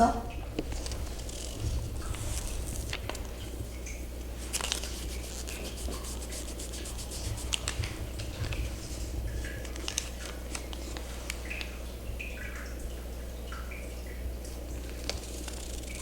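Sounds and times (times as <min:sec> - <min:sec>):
rubbing over tape: 0:00.6 - 0:03.3, 0:04.3 - 0:11.1, 0:14.9 - 0:16.0.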